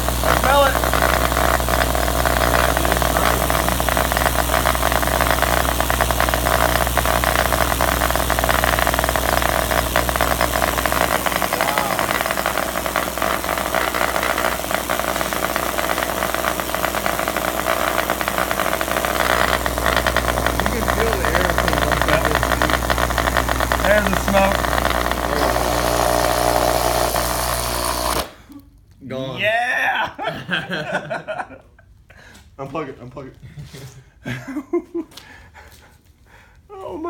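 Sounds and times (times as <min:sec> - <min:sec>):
crackling rattling buzz: 0:00.0 - 0:28.4
loud electrical hum: 0:00.0 - 0:31.6.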